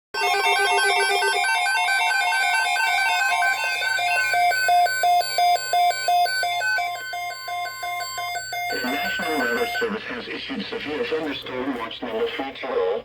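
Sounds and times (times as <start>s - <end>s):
rapid electronic beeps: 0.2s - 10.0s
faint steady tone: 3.4s - 10.0s.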